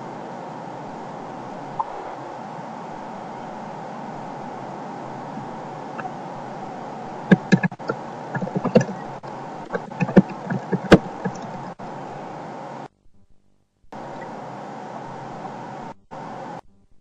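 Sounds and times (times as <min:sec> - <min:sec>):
steady hiss: 0:00.0 - 0:12.9, 0:14.0 - 0:16.6
sharp knocks and clicks: 0:07.3 - 0:11.8.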